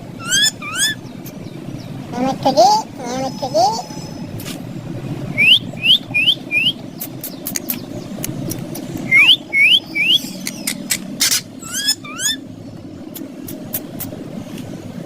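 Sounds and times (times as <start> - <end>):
low background hum: 0.0 - 15.0
parrot squeaky calls: 0.2 - 1.0, 9.1 - 12.4
sharp clicks: 7.0 - 9.2, 10.4 - 11.2.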